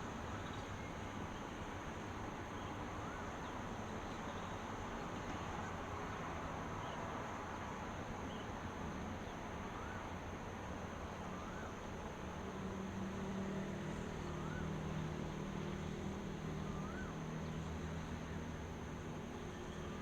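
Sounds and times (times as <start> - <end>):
outdoor ambient hiss: 0.0 - 20.0.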